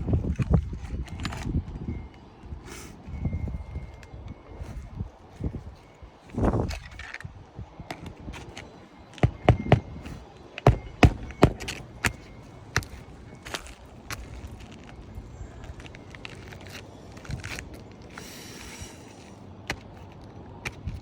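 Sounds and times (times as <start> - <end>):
knocks and taps on shingle roof: 10.6 - 12.2.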